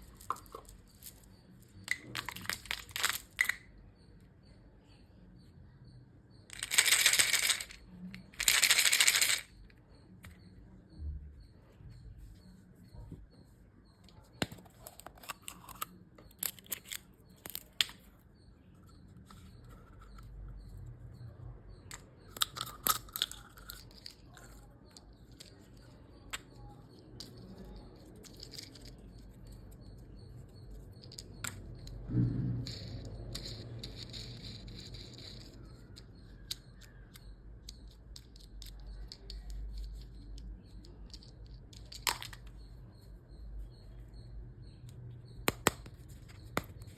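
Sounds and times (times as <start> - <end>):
plastic cases clicking and tapping: 45.4 - 46.9.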